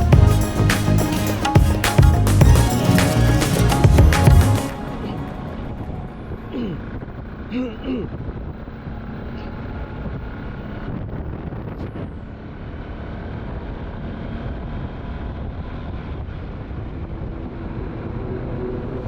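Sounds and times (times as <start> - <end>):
vehicle running on road: 8.3 - 19.0.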